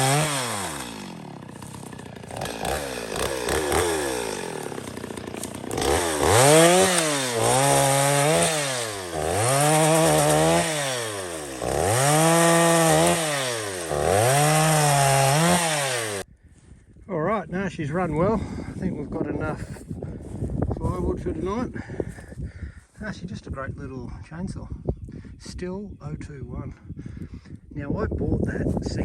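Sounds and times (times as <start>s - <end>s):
chainsaw cutting wood: 0.0s - 16.3s.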